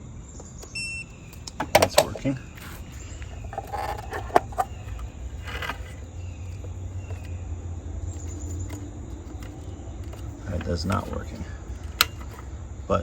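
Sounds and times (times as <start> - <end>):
steady low hum: 0.0 - 13.0
plastic outlet clicks: 0.5 - 2.3, 11.8 - 12.5.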